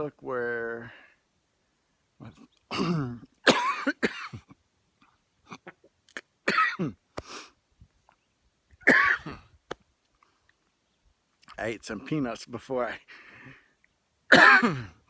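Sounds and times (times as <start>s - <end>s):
man clearing throat: 2.7s - 4.4s, 8.9s - 9.4s, 14.3s - 15.0s
man coughing hard: 2.7s - 4.5s, 6.5s - 7.0s, 8.9s - 9.4s, 14.3s - 15.0s.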